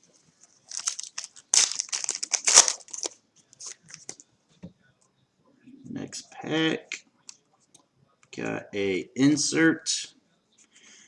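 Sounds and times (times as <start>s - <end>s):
foil wrapper crinkling and tearing: 0.6s - 3.2s.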